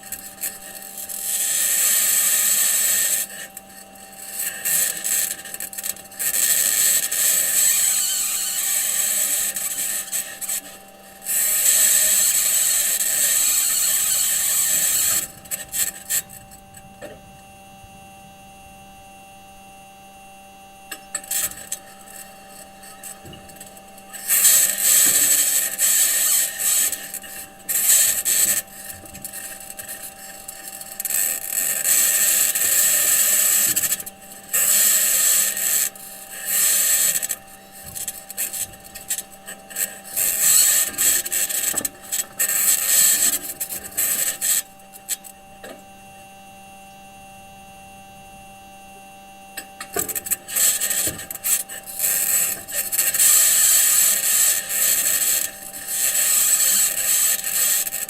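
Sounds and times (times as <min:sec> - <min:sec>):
steady hum: 0:00.0 - 0:58.0
metal wheels scraping over sand: 0:21.0 - 0:45.2.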